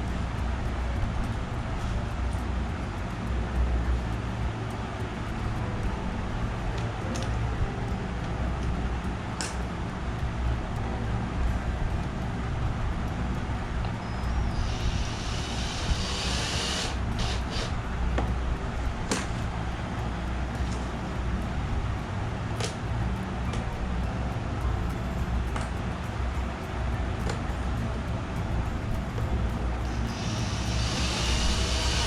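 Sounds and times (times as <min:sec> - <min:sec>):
low background rumble: 0:00.0 - 0:32.0
sharp clicks: 0:11.9 - 0:32.0.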